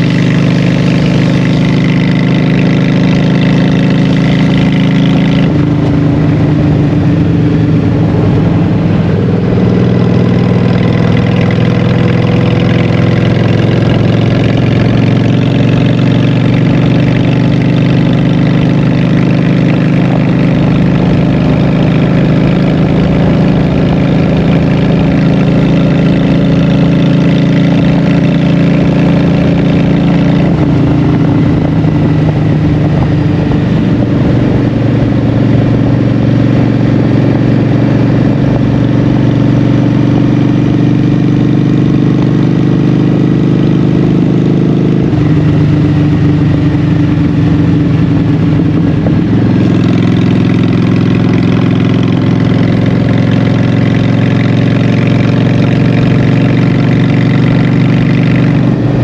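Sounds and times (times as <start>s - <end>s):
motorcycle engine running: 0.0s - 59.0s.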